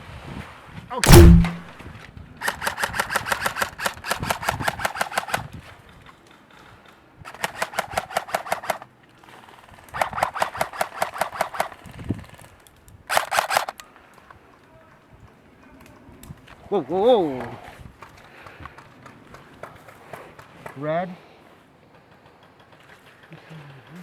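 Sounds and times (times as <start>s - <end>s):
airsoft rifle firing bursts: 1.0s - 1.7s.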